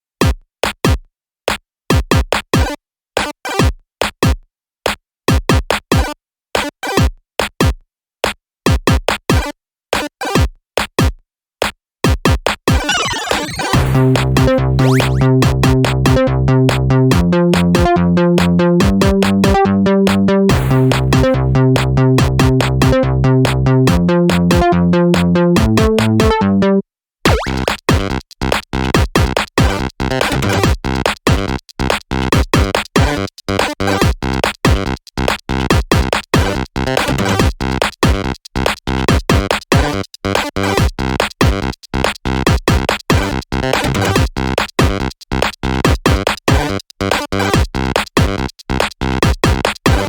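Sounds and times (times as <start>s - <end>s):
electronic drum-machine beat: 12.8s - 16.3s, 17.1s - 28.1s.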